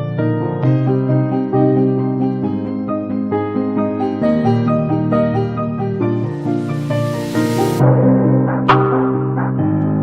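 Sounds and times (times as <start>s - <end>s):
rising hiss: 6.4s - 7.8s.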